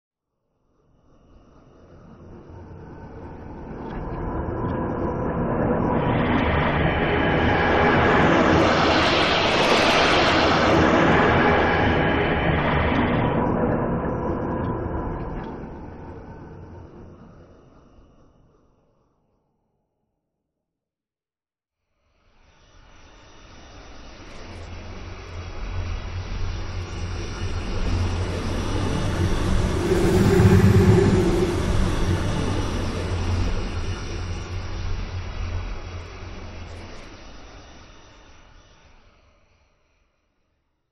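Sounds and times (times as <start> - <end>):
sci-fi space storm whoosh: 4.4 - 13.6, 27.1 - 34.5
sci-fi wind-like swoosh: 27.1 - 34.5.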